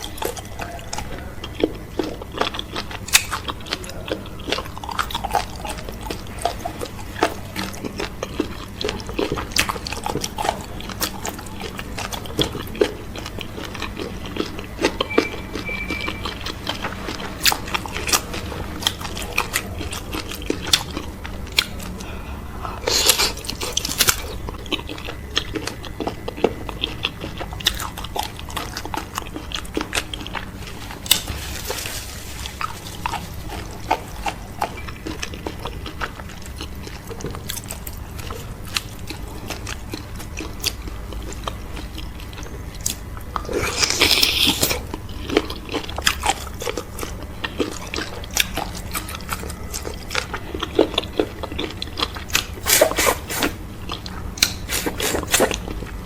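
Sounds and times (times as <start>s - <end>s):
chewing and biting clicks: 0.0s - 56.0s
person slurping: 52.4s - 53.6s, 54.4s - 55.7s.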